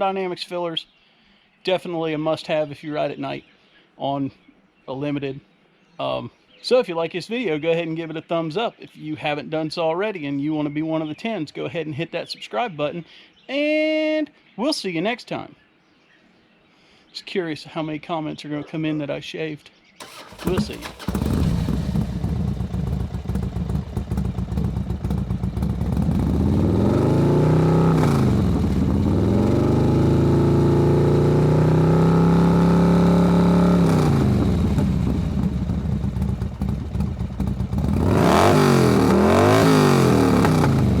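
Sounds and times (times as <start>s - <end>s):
motorcycle engine revving: 20.0s - 41.0s.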